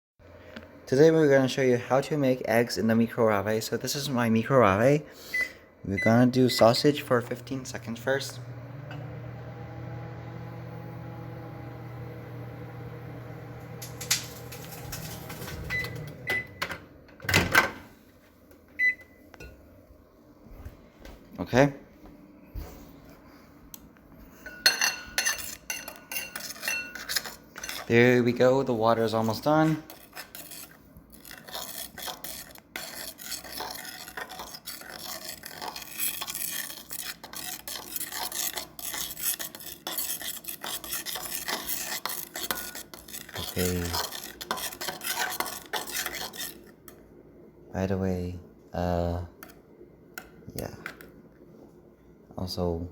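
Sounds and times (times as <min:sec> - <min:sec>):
utensil scraping a bowl: 0:06.6 - 0:16.2, 0:24.5 - 0:47.0
microwave oven humming: 0:07.6 - 0:17.9.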